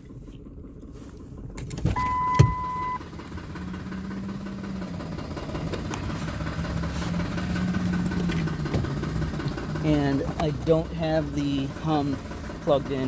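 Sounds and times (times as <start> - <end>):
truck engine idling roughly: 0.0 - 1.6, 2.6 - 13.0
electronic beep: 2.0 - 3.0.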